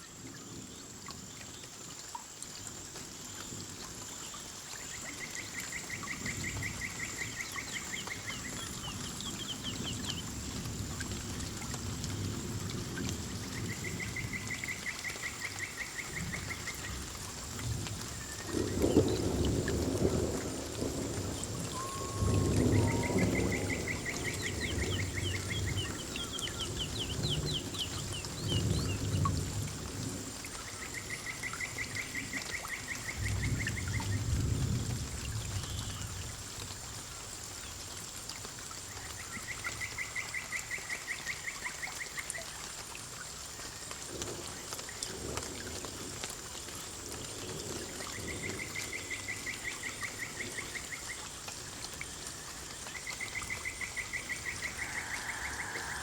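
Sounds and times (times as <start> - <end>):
water pouring and trickling: 0.0 - 56.0
low rumbles of thunder: 5.8 - 37.1, 44.0 - 51.0
rapid pulsed animal call: 21.6 - 25.5
high trills: 21.7 - 24.0.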